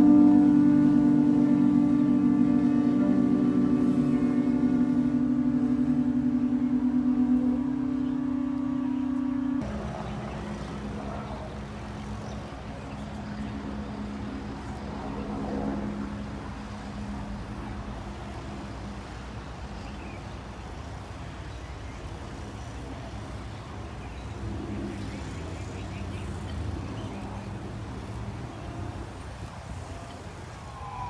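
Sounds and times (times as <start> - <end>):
faint held low note: 0.0 - 11.5
street traffic rumble: 0.0 - 31.0.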